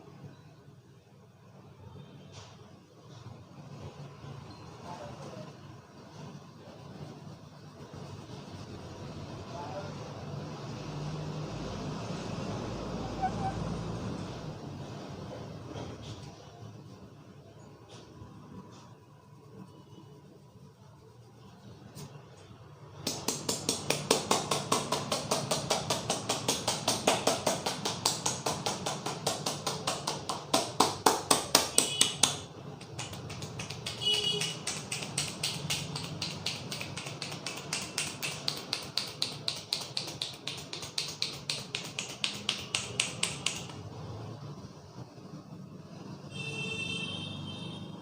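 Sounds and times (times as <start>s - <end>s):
hands tapping on head: 23.0s - 43.8s.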